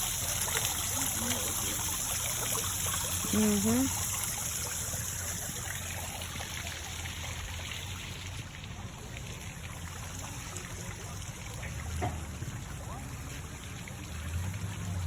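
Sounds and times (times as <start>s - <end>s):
fountain water trickling: 0.0s - 15.0s.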